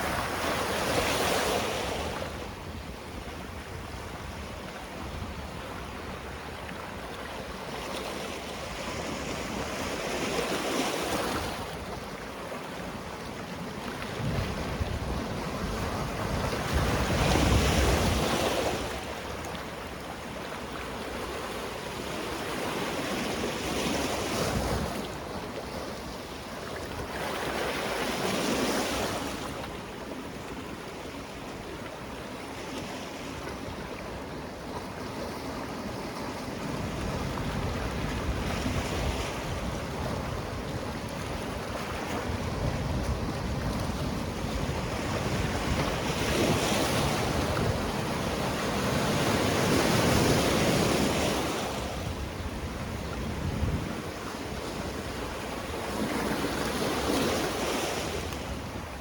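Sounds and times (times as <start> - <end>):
wind on microphone: 13.3 - 20.0, 22.0 - 27.5, 33.4 - 59.0.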